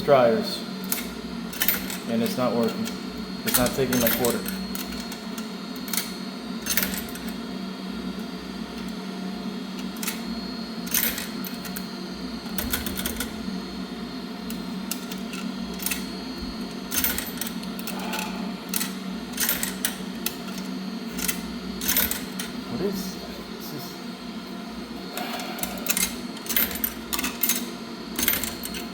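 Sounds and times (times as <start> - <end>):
low machine hum: 0.0 - 28.9
metallic clicks of coin slot: 2.6 - 5.2, 28.2 - 28.9.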